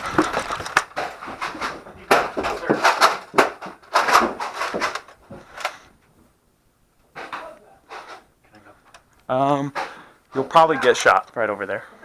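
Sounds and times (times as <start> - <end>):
person panting hard: 9.8 - 10.2.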